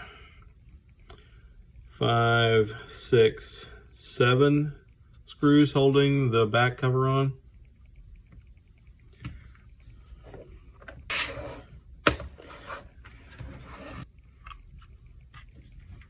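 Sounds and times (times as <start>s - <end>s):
scraping and rubbing: 11.1s - 11.7s, 12.3s - 14.1s.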